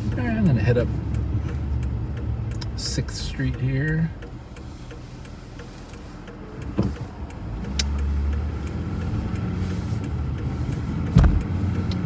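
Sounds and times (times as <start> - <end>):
car engine pulling away: 4.1 - 12.0
dull knock: 11.2 - 11.5.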